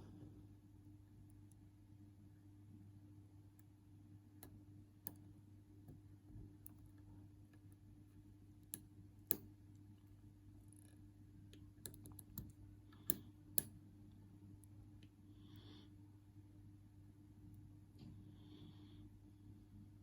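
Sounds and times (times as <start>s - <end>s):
steady low hum: 0.0s - 20.0s
lock pick clicking in padlock: 11.8s - 13.7s.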